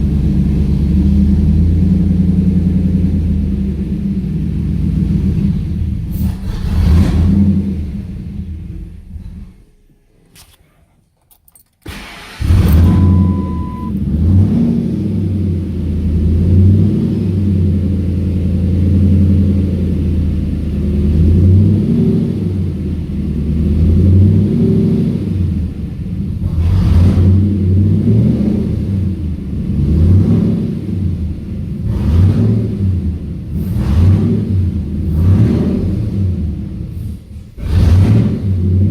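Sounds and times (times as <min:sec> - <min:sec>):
truck engine starting and idling: 0:00.0 - 0:10.6, 0:11.3 - 0:38.9
short beep: 0:12.5 - 0:14.0.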